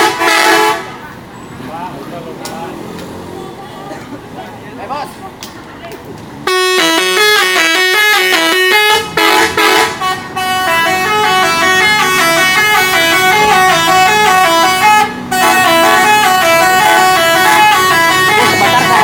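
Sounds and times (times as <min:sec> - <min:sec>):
musical air horns: 0:00.0 - 0:01.0, 0:06.4 - 0:19.0.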